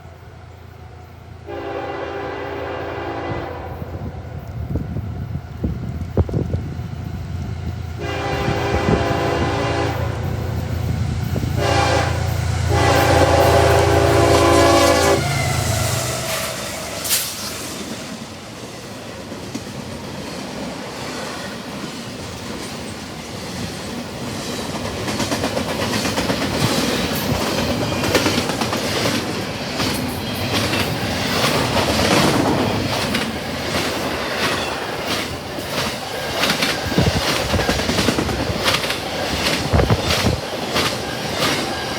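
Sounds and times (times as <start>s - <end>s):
locomotive horn blasts: 1.4s - 4.1s, 8.0s - 10.5s, 11.4s - 17.2s
train wheels clacking on rails: 4.5s - 41.9s.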